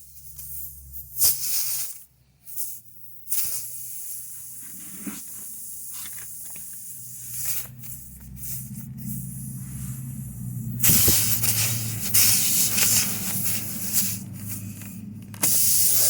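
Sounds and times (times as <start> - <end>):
air hissing from tire: 0.0 - 16.0
low hum: 7.7 - 16.0.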